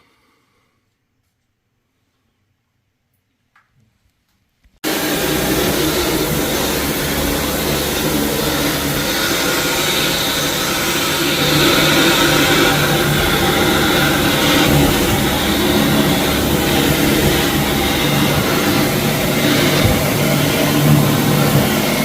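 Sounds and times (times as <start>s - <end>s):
floor cleaning machine running: 4.8s - 22.0s.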